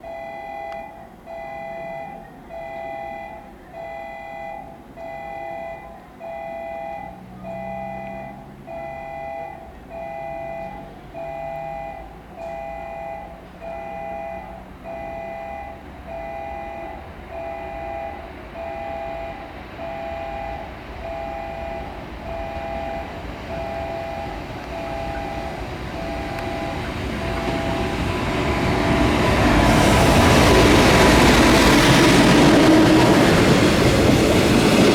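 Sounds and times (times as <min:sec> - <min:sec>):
level crossing warning bell: 0:00.0 - 0:34.9
freight train rumbling: 0:07.1 - 0:34.9.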